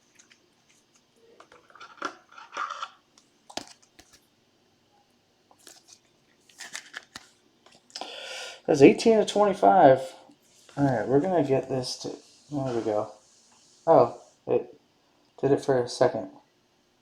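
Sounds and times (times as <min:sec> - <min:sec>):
card sleeves crinkling: 0:05.5 - 0:08.0.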